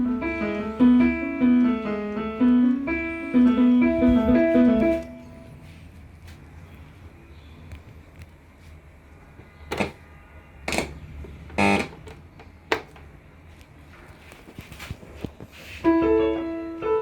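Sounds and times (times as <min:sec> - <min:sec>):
synthesizer notes: 0:00.0 - 0:05.6.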